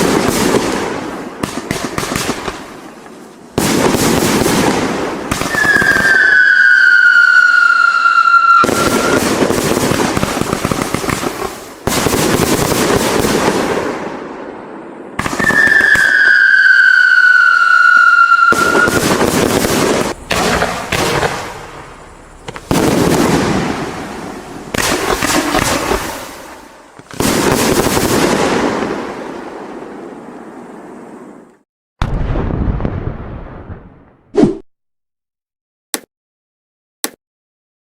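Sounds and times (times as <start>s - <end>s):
firework shots with crackling: 0.0s - 14.6s, 15.2s - 30.2s
firework whistle: 3.8s - 13.4s, 15.2s - 28.7s.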